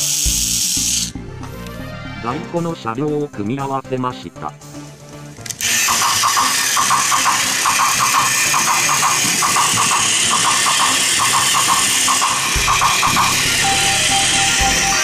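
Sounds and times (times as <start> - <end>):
toy train motor whirring: 0.0 - 1.2, 5.4 - 15.0
rhythmic clicking of track: 5.4 - 15.0.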